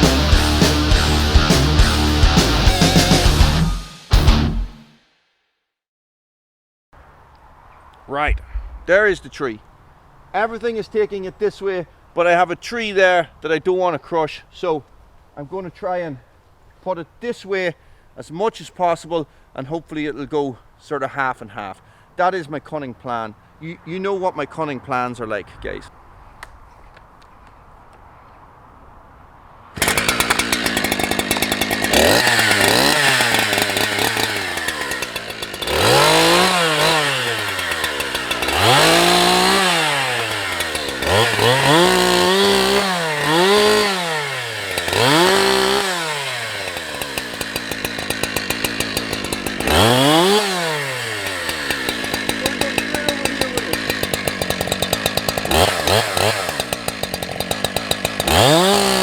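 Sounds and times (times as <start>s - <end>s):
chainsaw revving: 0.0s - 4.5s, 29.8s - 59.0s.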